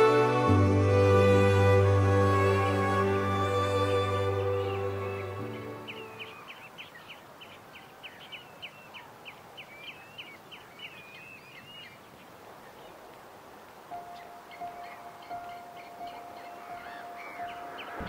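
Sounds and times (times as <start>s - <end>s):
background music: 0.0s - 6.4s, 14.0s - 18.0s
steady outdoor hiss: 0.0s - 18.0s
shorebirds chirping and trilling: 4.3s - 12.9s, 13.9s - 18.0s.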